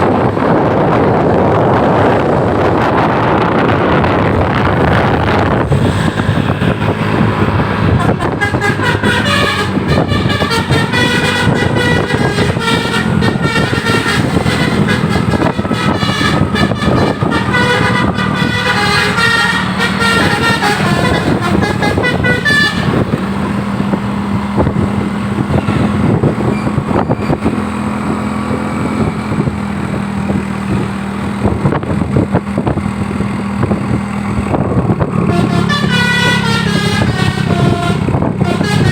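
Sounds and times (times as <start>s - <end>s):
diesel engine running: 0.0s - 38.9s
traffic noise: 0.0s - 38.9s
musical air horn tune: 5.7s - 23.5s, 35.2s - 38.9s.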